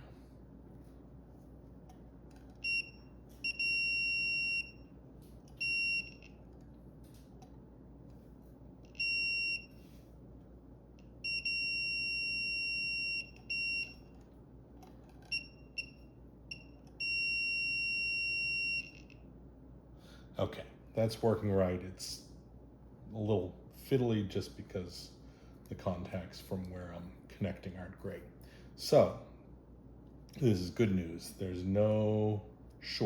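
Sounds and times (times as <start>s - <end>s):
multimeter continuity beeps: 2.6s - 6.4s, 8.8s - 9.8s, 11.2s - 14.2s, 15.2s - 19.2s.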